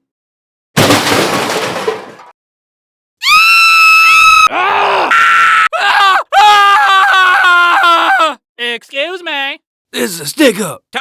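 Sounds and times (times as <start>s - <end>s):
noisy crash: 0.8s - 2.3s
person screaming: 3.2s - 8.4s.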